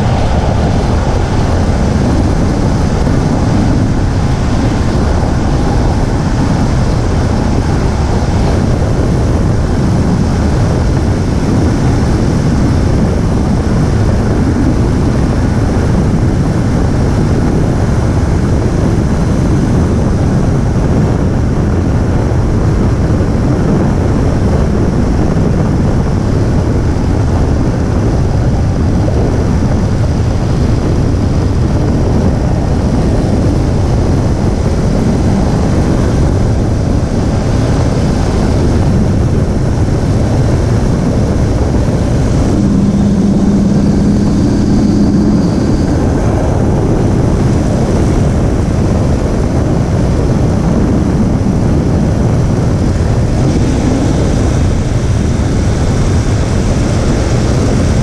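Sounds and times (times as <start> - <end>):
steady low tone: 0.0 - 17.3, 33.0 - 58.0
car road and wind noise: 0.0 - 58.0.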